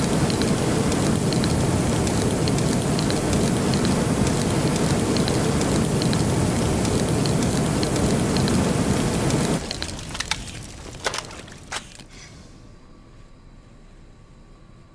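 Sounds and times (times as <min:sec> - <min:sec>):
faint hiss: 0:00.0 - 0:10.7
flamethrower roar: 0:00.0 - 0:11.5
crackles and pops: 0:00.0 - 0:12.1.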